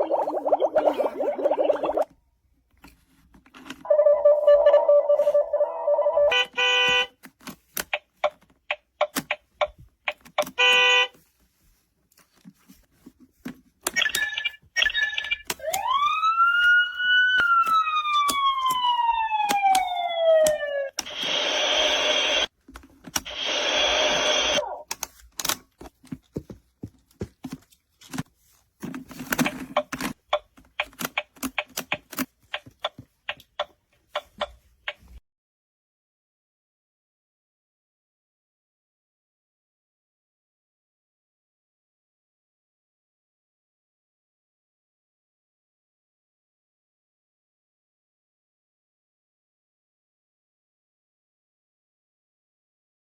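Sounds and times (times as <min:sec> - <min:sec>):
electronic horn-like tone: 0:05.5 - 0:07.1
toy switches and buttons clicking: 0:07.4 - 0:10.7, 0:29.4 - 0:35.1
electronic hissing noise: 0:23.3 - 0:24.6.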